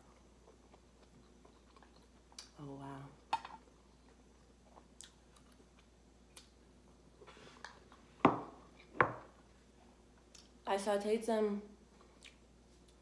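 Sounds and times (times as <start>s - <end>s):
person eating close up: 0.0s - 9.0s, 11.9s - 13.0s.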